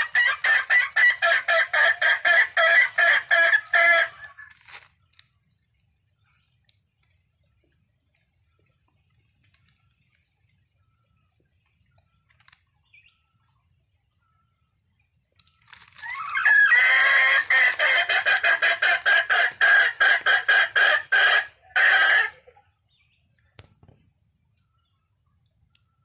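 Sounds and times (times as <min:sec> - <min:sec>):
bird calling: 0:15.6 - 0:23.2.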